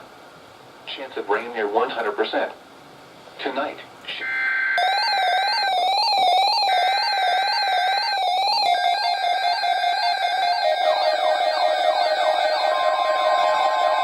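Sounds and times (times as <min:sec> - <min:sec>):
warbling alert tone: 0:04.2 - 0:14.0.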